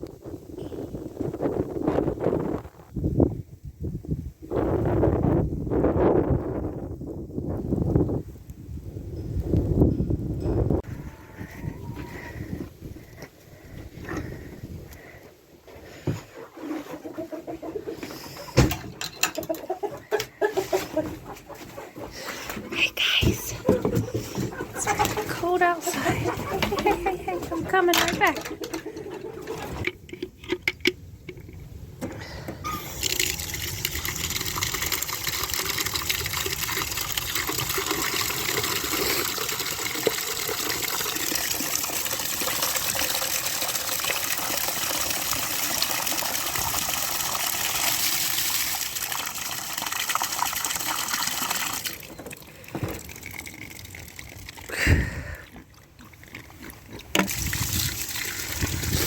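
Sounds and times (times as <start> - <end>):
water pouring into a container: 32.9 - 56.2, 57.1 - 59.0.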